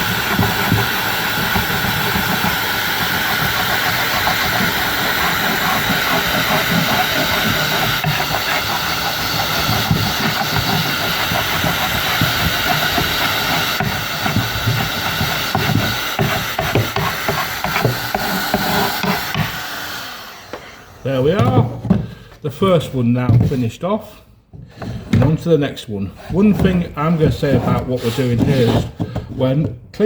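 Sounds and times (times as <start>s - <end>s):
power tool stripping varnish: 0.0s - 21.6s.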